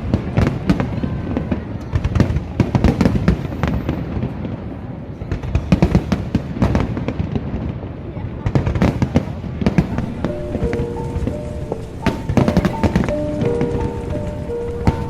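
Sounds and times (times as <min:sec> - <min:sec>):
fireworks bangs and crackles: 0:00.0 - 0:15.0
music playing: 0:10.0 - 0:15.0.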